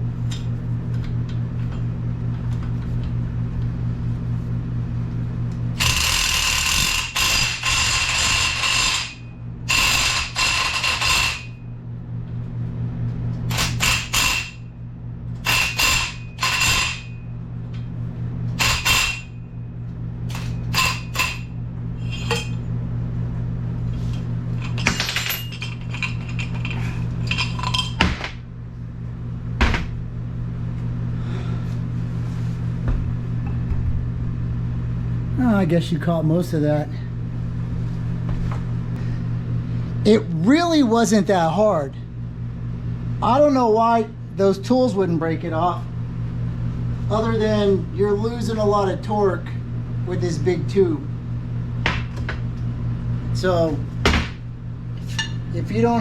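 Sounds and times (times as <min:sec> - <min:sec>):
steady low hum: 0:00.0 - 0:56.0
ratcheting and metal clanking: 0:05.8 - 0:11.6.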